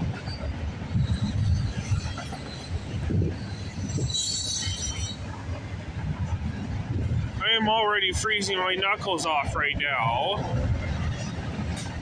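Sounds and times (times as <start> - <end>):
freight train rumbling over rails: 0.0 - 12.0
high wheel squeal: 0.3 - 5.3.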